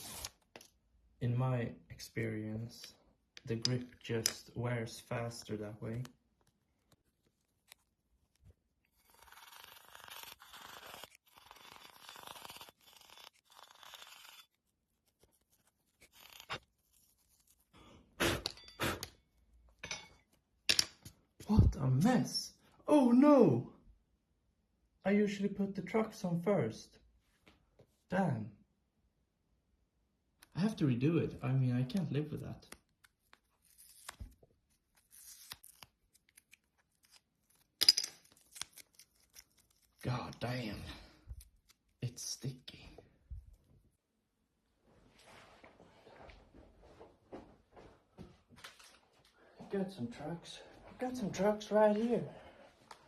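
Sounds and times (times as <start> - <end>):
grip tape scraping: 5.9 - 17.6
tape ripping off: 33.0 - 40.0.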